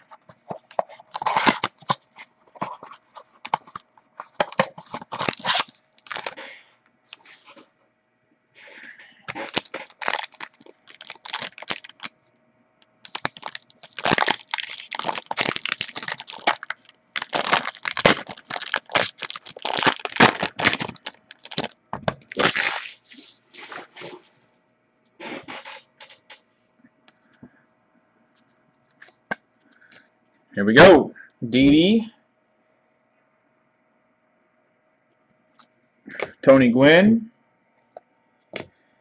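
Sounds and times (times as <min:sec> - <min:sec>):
wrapper and cardboard crinkling: 0:00.0 - 0:07.2, 0:09.3 - 0:12.1, 0:13.0 - 0:24.2.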